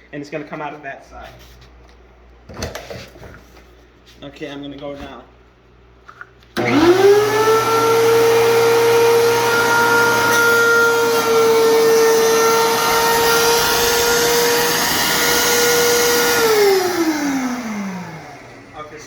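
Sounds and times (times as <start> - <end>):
thickness planer whining: 6.6 - 19.0.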